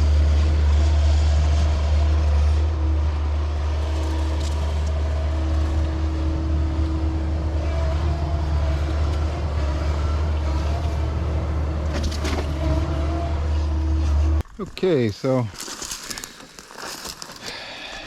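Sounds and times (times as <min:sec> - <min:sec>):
excavator diesel engine running: 0:00.0 - 0:14.4.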